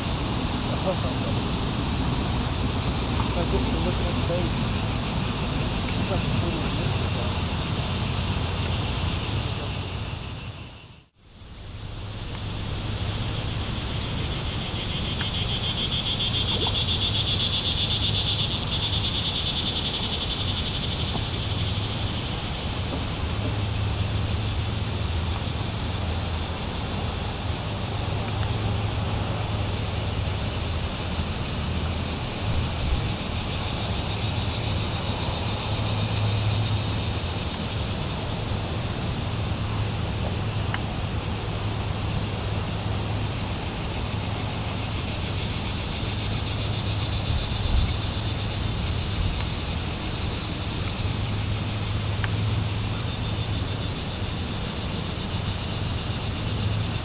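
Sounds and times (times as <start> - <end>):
chorus of pulsing wildlife calls: 0.0 - 57.0.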